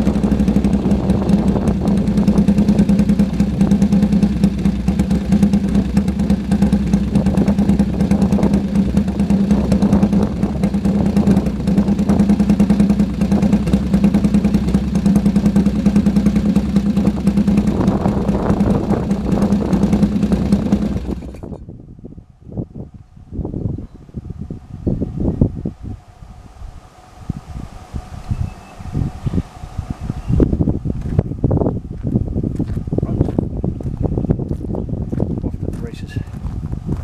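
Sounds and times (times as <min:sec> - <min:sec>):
motorcycle engine idling: 0:00.0 - 0:21.6.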